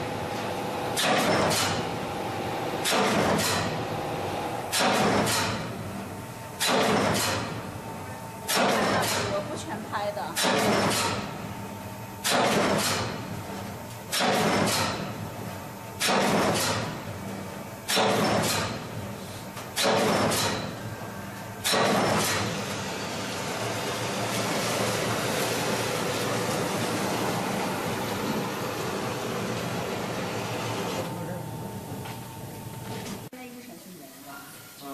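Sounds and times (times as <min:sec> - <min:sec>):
machine running steadily: 0:00.0 - 0:34.9
punching machine double bangs: 0:00.9 - 0:02.0, 0:02.8 - 0:04.0, 0:04.7 - 0:05.8, 0:06.6 - 0:07.7, 0:08.4 - 0:09.4, 0:10.4 - 0:11.5, 0:12.2 - 0:13.4, 0:14.1 - 0:15.4, 0:16.0 - 0:17.2, 0:17.8 - 0:19.1, 0:19.7 - 0:20.9, 0:21.6 - 0:22.9.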